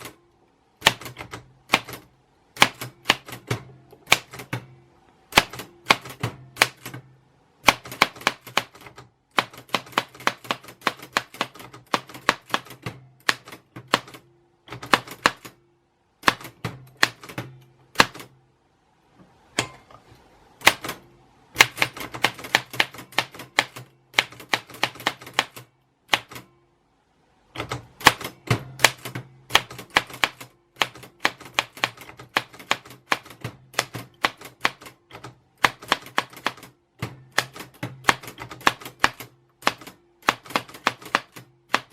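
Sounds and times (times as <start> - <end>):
typewriter keys clicking: 7.6 - 15.6, 21.6 - 26.5, 27.6 - 41.9.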